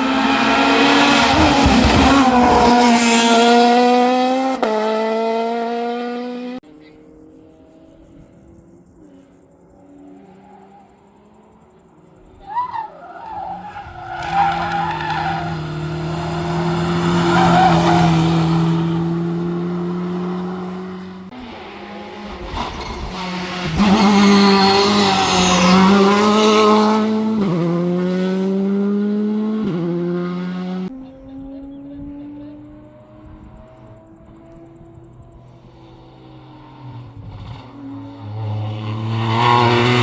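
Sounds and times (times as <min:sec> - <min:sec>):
race car engine at high revs: 0:00.0 - 0:06.6, 0:13.6 - 0:40.0
tyres squealing: 0:12.4 - 0:19.0.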